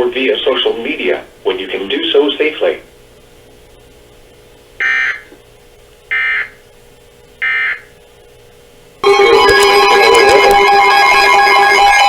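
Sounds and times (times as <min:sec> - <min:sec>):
harsh digital data tones: 0:04.8 - 0:05.3, 0:06.1 - 0:06.6, 0:07.4 - 0:07.9
loud guitar music: 0:09.0 - 0:12.0.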